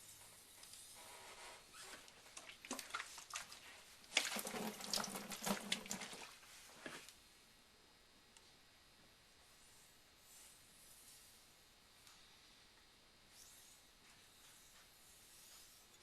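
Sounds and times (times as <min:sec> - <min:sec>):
water splashing and running: 0:02.2 - 0:06.5.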